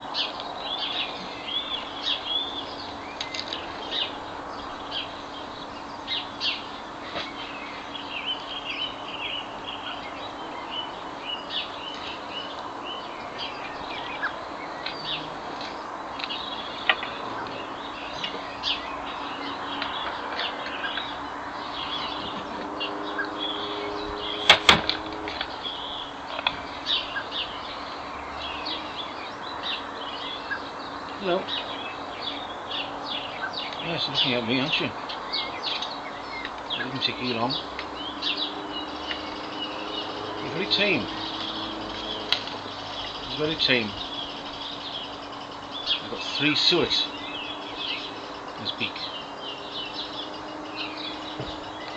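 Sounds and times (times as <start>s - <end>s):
small birds chirping: 0.0s - 51.9s
sharp knocks: 24.4s - 25.4s.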